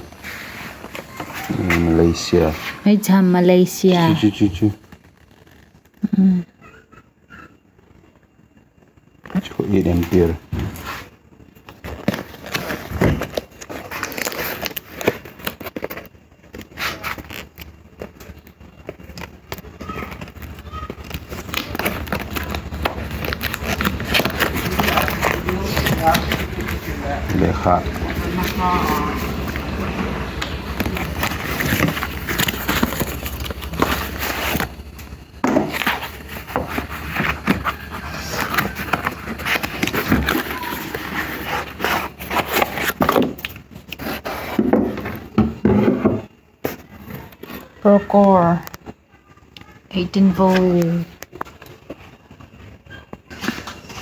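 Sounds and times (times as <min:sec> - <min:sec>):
packaging rustling: 0:09.3 - 0:45.7.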